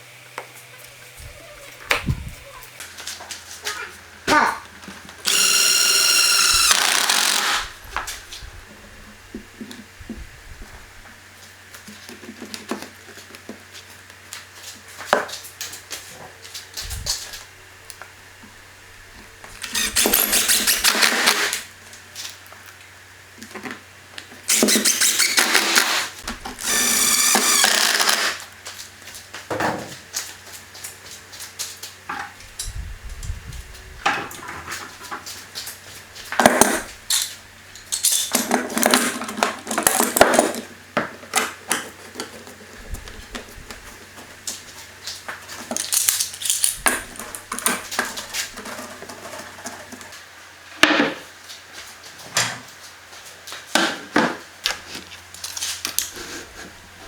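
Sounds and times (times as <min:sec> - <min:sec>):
small power tool whining: 0:05.2 - 0:08.1, 0:19.6 - 0:21.6, 0:24.5 - 0:28.5
handling knocks and clicks: 0:45.4 - 0:49.2.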